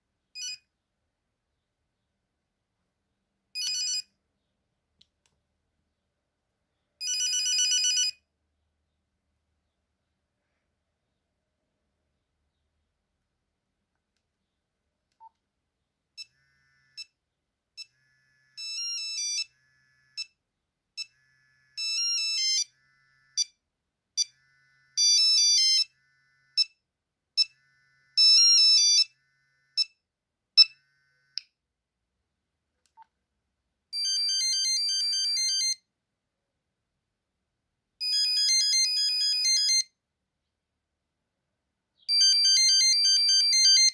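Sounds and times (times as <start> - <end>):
monophonic phone ringtone: 3.6 - 4.1, 7.0 - 8.2, 17.8 - 20.4, 21.0 - 23.6, 24.2 - 26.8, 27.4 - 29.9, 34.0 - 35.8, 38.0 - 39.9, 42.1 - 43.9.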